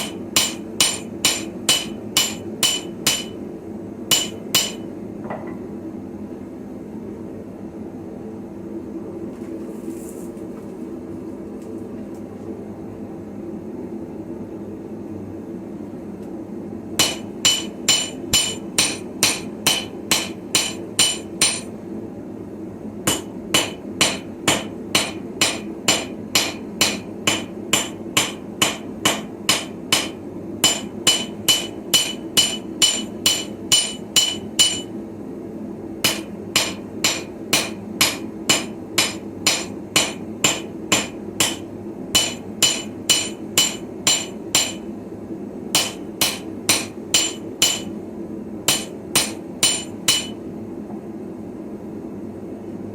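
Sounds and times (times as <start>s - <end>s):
hammer striking steel on anvil: 0.0s - 3.4s, 4.1s - 5.6s, 17.0s - 21.7s, 23.1s - 35.0s, 36.0s - 44.9s, 45.8s - 48.0s, 48.7s - 50.4s.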